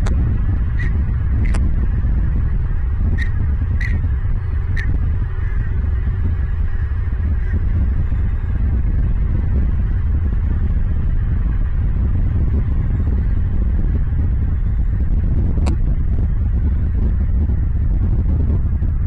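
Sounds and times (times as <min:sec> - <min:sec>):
low rumble: 0:00.0 - 0:19.0
sharp click: 0:03.2 - 0:04.0.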